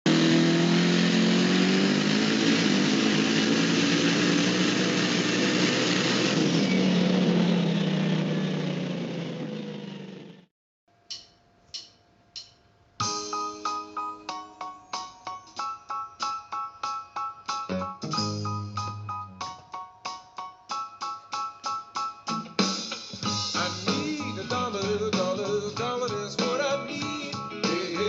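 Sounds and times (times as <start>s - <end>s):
keyboard music: 13.0s - 28.0s
short sharp notes: 17.7s - 19.7s.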